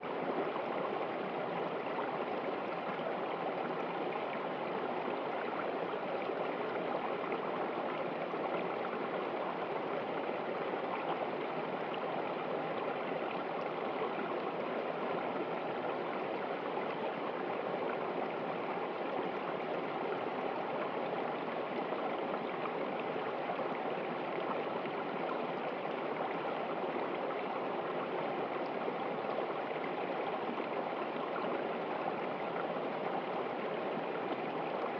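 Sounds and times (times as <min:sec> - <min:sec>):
stream flowing over rocks: 0:00.0 - 0:34.9.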